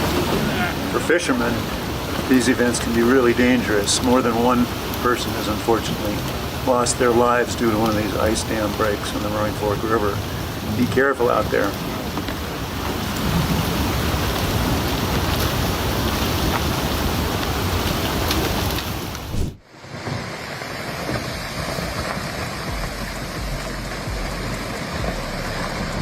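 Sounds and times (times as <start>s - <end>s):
steady noise: 0.0s - 14.8s, 19.1s - 26.0s
floodwater roaring in river: 0.0s - 26.0s
low rumble: 21.3s - 26.0s.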